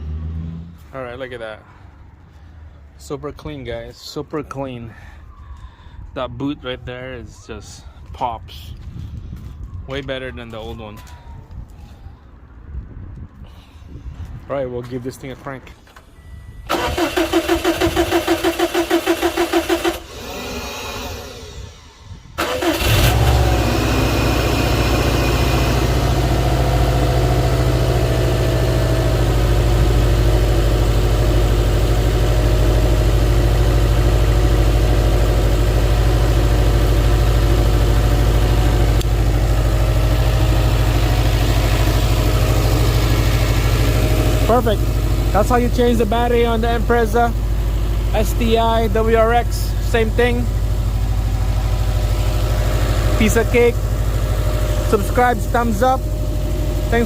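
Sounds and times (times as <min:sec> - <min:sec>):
starter motor cranking: 0:16.7 - 0:24.0
car engine idling: 0:16.7 - 0:57.0.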